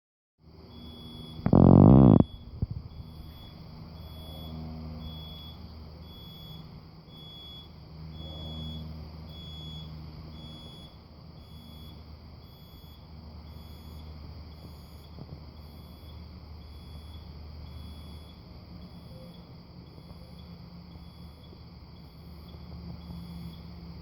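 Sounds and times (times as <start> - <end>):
short high-pitched beeps: 1.5 - 3.0.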